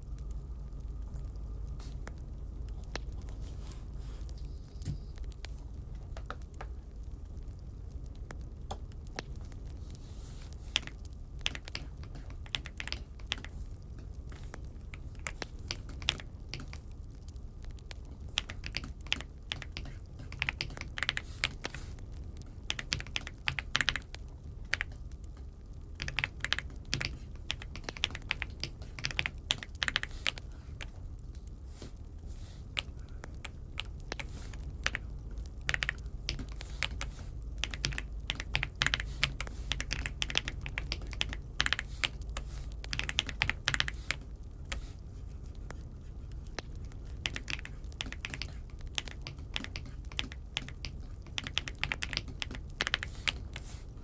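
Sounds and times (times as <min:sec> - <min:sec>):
steady low hum: 0:00.0 - 0:54.0
mechanical keyboard typing: 0:10.7 - 0:13.6, 0:14.4 - 0:17.2, 0:17.8 - 0:25.4, 0:26.0 - 0:31.0, 0:32.8 - 0:44.9, 0:46.4 - 0:53.7.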